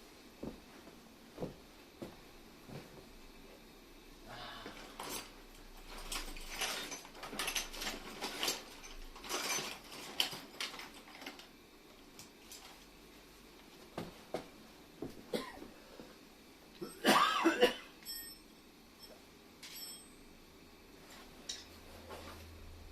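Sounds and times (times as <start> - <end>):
hand tools clicking and scraping: 4.7 - 11.5.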